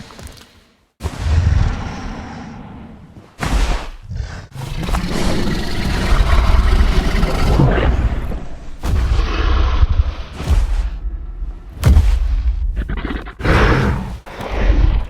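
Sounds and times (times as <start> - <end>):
dinosaur roar: 4.0 - 11.7, 12.8 - 15.0.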